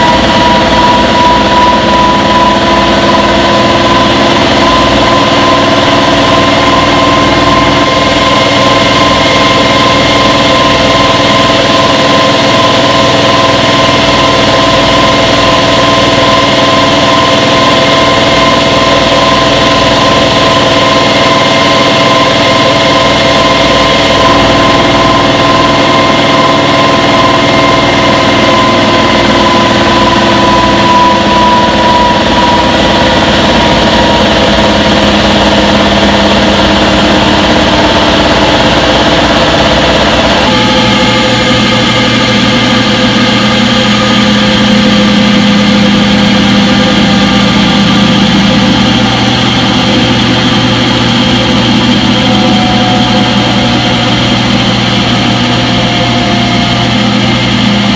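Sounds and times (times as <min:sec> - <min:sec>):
washing machine spinning: 0:00.0 - 0:57.9.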